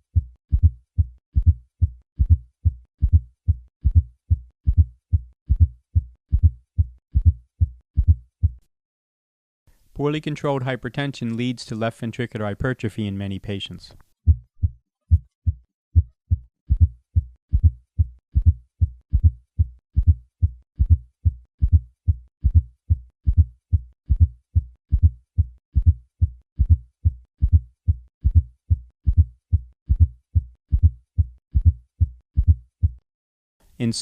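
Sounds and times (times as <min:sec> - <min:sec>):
heartbeat gallop thumps: 0:00.1 - 0:08.6, 0:14.2 - 0:33.0.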